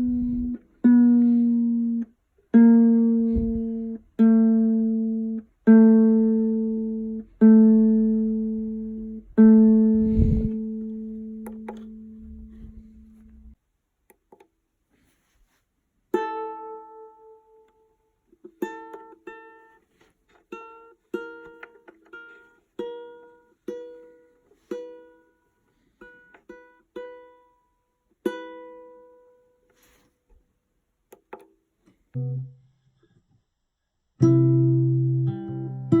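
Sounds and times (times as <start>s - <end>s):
ukulele chords ringing: 0.0s - 13.6s, 16.1s - 29.6s, 32.2s - 33.0s, 34.2s - 36.0s.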